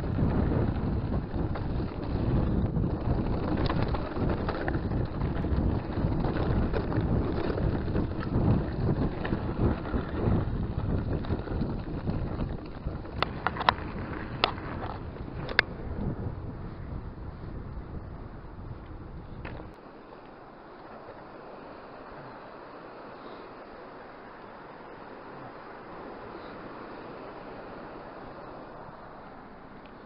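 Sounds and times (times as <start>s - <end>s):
wind buffeting microphone: 0.0s - 19.8s.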